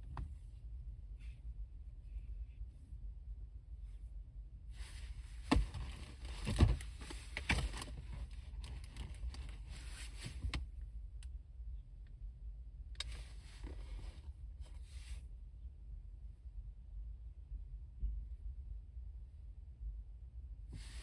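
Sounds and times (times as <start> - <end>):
steady low rumble: 0.0 - 21.0
rustling and handling noise: 4.8 - 10.9, 13.0 - 15.2.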